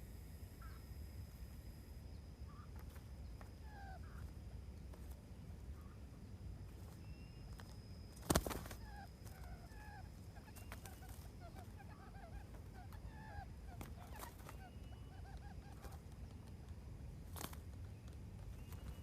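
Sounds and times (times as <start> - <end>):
quail calling: 0.6 - 0.9, 2.4 - 16.4.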